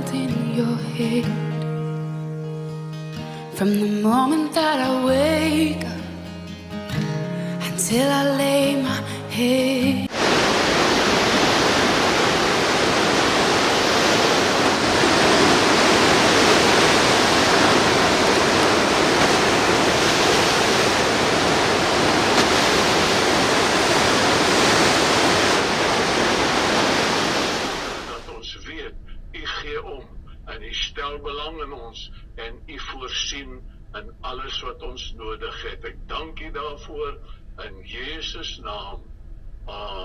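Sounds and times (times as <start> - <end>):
river rushing over rocks: 10.1 - 28.2.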